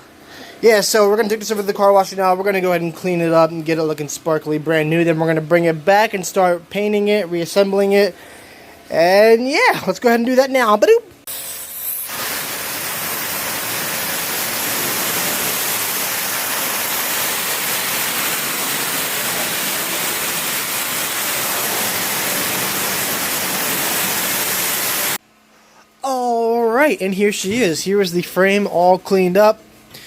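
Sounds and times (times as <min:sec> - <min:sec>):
pressure washer water spray hiss: 0:11.3 - 0:25.2.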